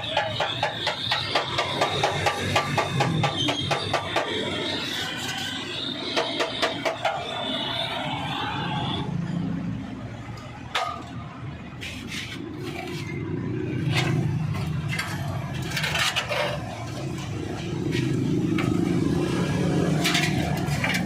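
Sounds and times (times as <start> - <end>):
scraping strokes: 11.7 - 21.0.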